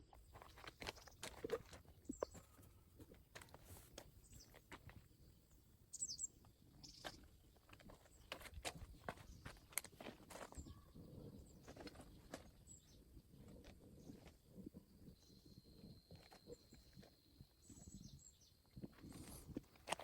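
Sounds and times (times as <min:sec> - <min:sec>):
high bird chirps: 0:05.9 - 0:07.2.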